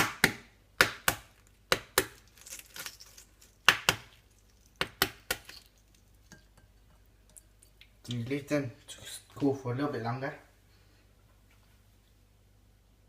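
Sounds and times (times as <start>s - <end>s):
eggshell crackling: 0.8s - 8.6s.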